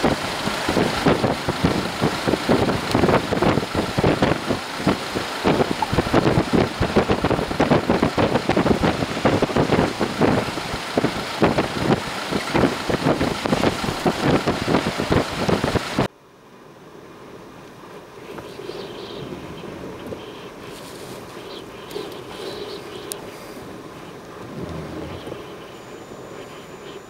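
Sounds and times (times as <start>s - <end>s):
wind buffeting microphone: 0.0s - 16.1s, 21.4s - 25.7s.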